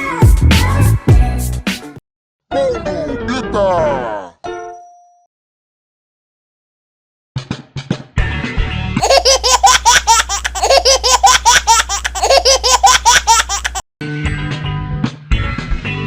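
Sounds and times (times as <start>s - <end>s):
cartoon laughter: 9.0s - 13.8s.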